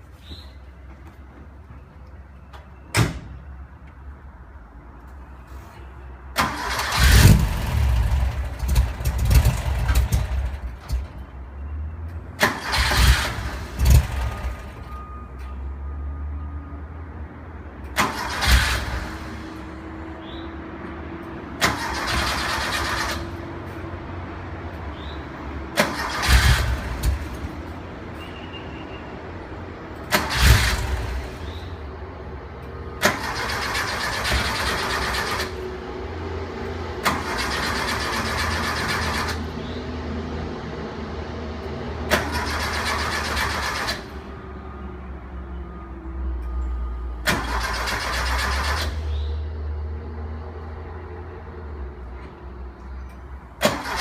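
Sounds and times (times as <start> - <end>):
engine cranking: 6.4 - 11.2, 12.4 - 14.8, 17.9 - 19.4, 21.6 - 23.4, 25.8 - 27.5, 30.1 - 31.6, 33.0 - 35.6, 37.0 - 39.5, 42.1 - 44.2, 47.2 - 49.2, 53.6 - 54.0.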